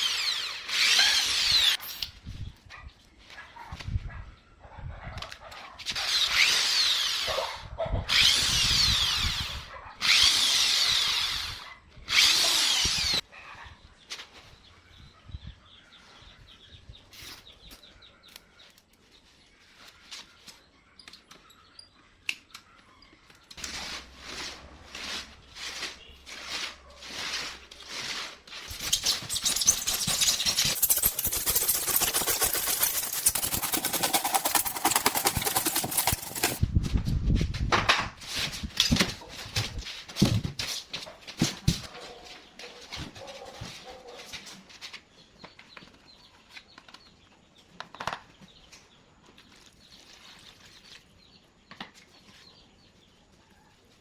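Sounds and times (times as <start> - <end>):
continuous loud tool noise: 0.0 - 1.8, 5.8 - 13.2, 25.2 - 36.6
power drill bursts: 0.0 - 1.8, 6.0 - 7.3, 8.1 - 13.2
rhythmic strokes: 29.4 - 36.6.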